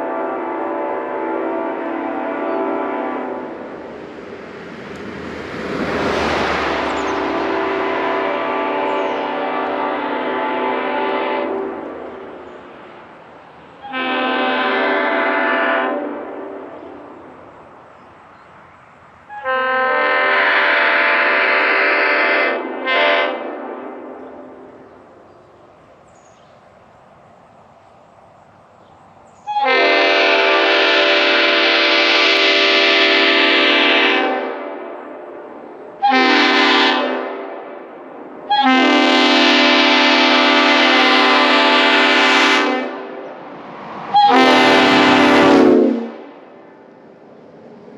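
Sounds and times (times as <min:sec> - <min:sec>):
air horn blasts: 0:00.0 - 0:03.6, 0:07.1 - 0:12.4, 0:13.8 - 0:16.7, 0:19.3 - 0:24.4, 0:29.5 - 0:34.8, 0:36.0 - 0:37.8, 0:38.5 - 0:43.2, 0:44.1 - 0:46.5.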